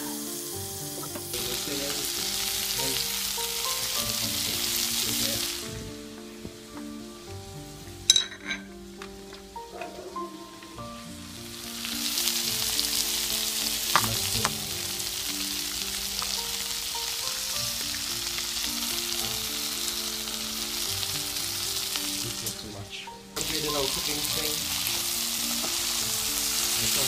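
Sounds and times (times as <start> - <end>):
sausage and onions sizzling: 0.0 - 27.0
utensil clink: 8.1 - 8.7.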